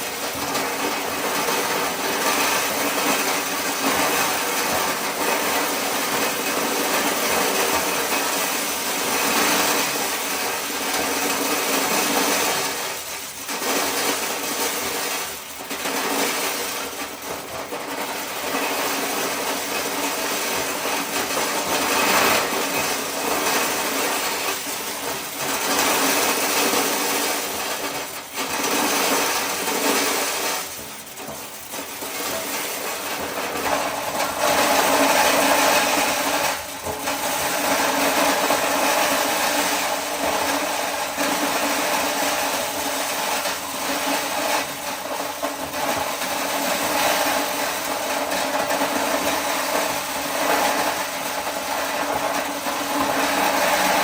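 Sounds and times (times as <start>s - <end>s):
corn sheller grinding and rattling: 0.0s - 54.0s.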